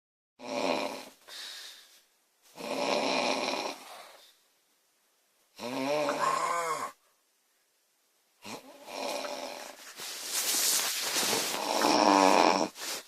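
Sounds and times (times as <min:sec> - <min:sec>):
woman snoring loudly: 0:00.4 - 0:01.1, 0:02.6 - 0:04.0, 0:05.6 - 0:07.0, 0:08.4 - 0:09.6, 0:11.5 - 0:12.8.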